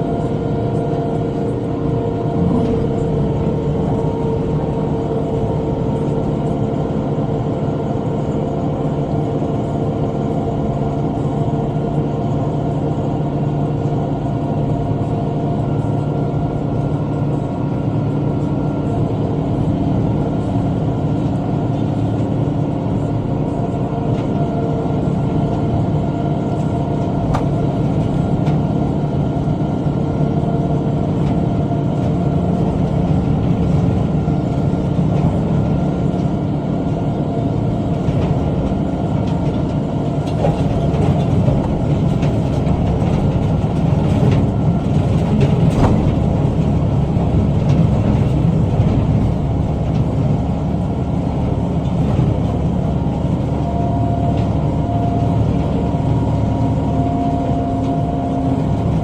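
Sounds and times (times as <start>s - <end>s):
tractor engine under load: 0.0s - 8.7s, 25.0s - 59.0s.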